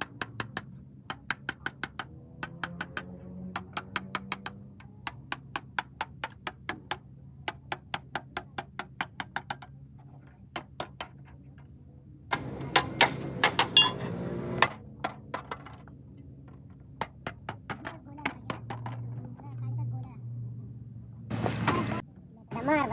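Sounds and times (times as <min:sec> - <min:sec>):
hammer striking metal: 0:12.3 - 0:14.8.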